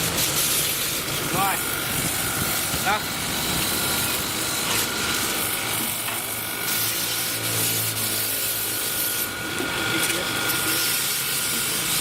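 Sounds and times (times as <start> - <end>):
sandpaper rasping on metal: 6.7 - 9.4, 10.0 - 12.0.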